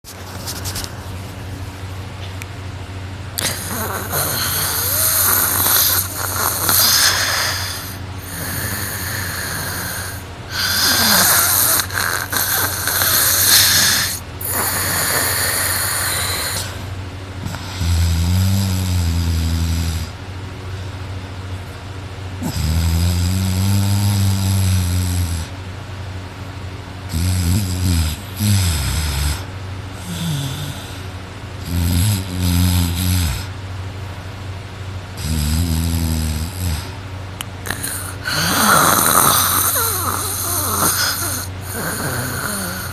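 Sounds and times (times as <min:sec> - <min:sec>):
person snoring loudly: 0:03.4 - 0:20.2, 0:22.4 - 0:25.5, 0:27.1 - 0:33.5, 0:35.2 - 0:37.0, 0:37.6 - 0:42.9.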